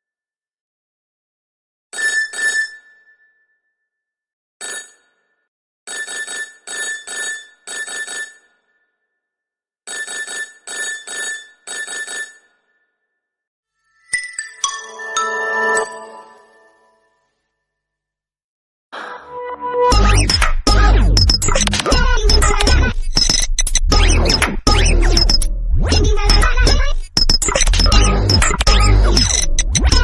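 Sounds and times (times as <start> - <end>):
phone ringtone bell trills: 4.6 - 5.1, 5.9 - 8.5, 9.9 - 12.7, 13.8 - 17.2.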